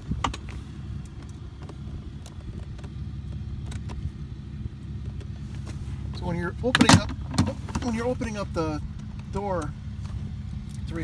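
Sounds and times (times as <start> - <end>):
steady low hum: 0.0 - 11.0
plastic parts clicking and tapping: 6.7 - 8.2.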